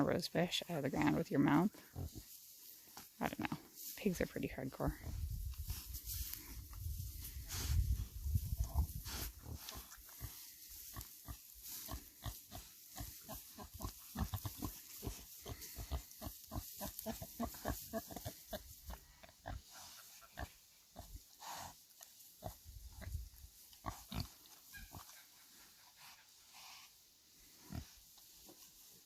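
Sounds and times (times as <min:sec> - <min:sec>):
pigs grunting: 0:08.7 - 0:21.2.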